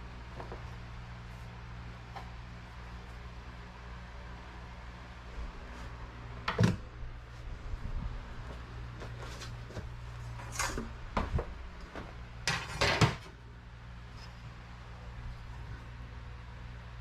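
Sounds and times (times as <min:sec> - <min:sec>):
steady low hum: 0:00.0 - 0:17.0
hard objects knocking and clattering: 0:12.5 - 0:13.3.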